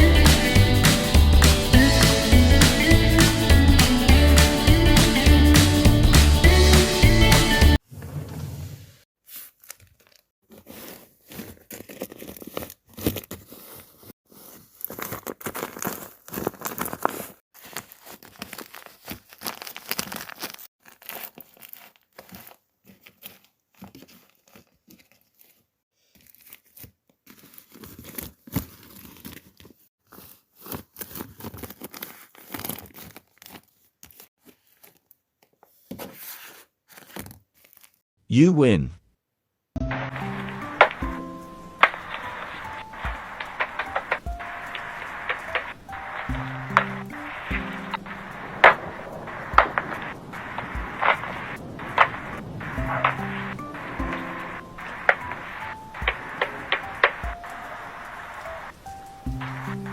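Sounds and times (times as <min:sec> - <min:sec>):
paper and tape crinkling: 0:09.4 - 0:25.6, 0:40.2 - 0:59.9.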